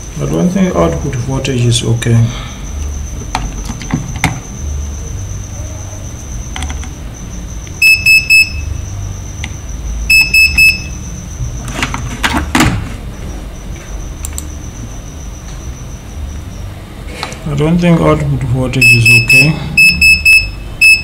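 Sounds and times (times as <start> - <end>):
electronic beeper high beeps: 7.2 - 11.6, 18.8 - 21.0
clicks: 13.8 - 14.6.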